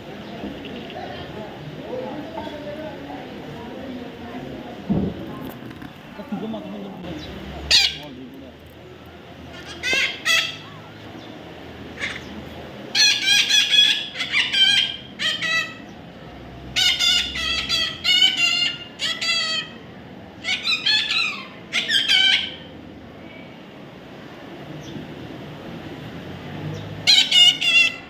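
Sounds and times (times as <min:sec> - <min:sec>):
parrot squawking: 0:07.7 - 0:08.1, 0:09.5 - 0:10.7, 0:12.9 - 0:15.9, 0:16.8 - 0:19.8, 0:20.4 - 0:22.7, 0:27.0 - 0:28.0.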